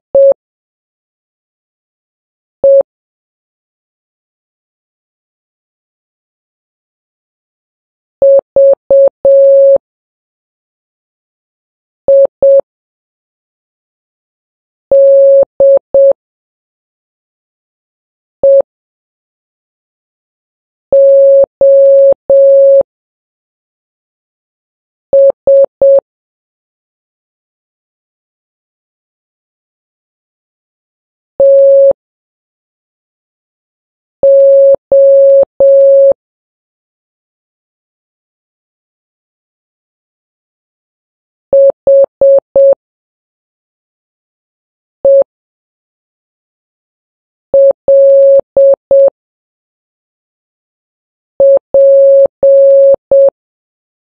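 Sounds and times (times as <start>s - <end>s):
morse code beeps: 0.2s - 0.4s, 2.6s - 2.8s, 8.2s - 9.8s, 12.1s - 12.6s, 14.9s - 16.2s, 18.4s - 18.6s, 20.9s - 22.8s, 25.2s - 26.0s, 31.4s - 32.0s, 34.2s - 36.2s, 41.6s - 42.8s, 47.6s - 49.1s, 51.4s - 53.3s.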